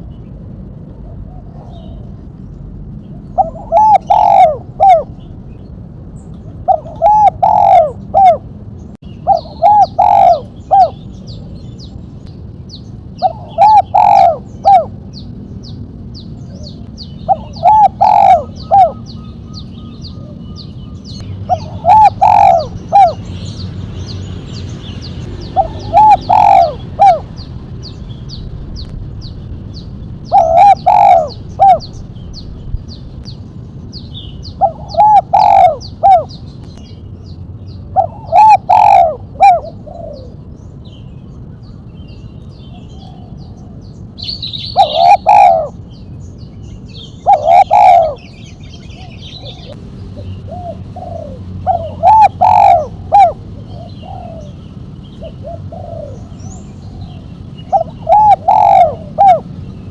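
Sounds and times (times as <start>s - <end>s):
small birds chirping: 0.0s - 59.9s
dove cooing: 0.9s - 2.2s, 3.2s - 5.2s, 6.6s - 8.5s, 9.2s - 11.2s, 13.2s - 15.2s, 16.4s - 23.6s, 25.2s - 27.5s, 30.2s - 32.4s, 34.4s - 36.5s, 37.9s - 40.5s, 44.6s - 45.8s, 46.9s - 59.9s.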